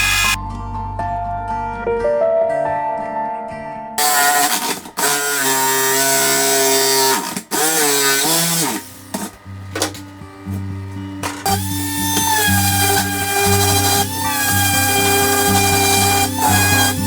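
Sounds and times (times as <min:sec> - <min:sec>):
electric power tool whining: 0:00.0 - 0:00.4, 0:04.0 - 0:17.0.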